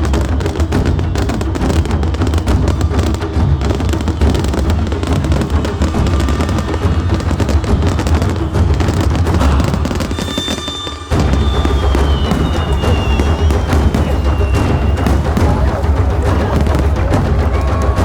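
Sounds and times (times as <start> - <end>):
background music: 0.0 - 18.0
fireworks crackling and booming: 0.0 - 18.0
whistle falling in pitch: 9.6 - 16.7.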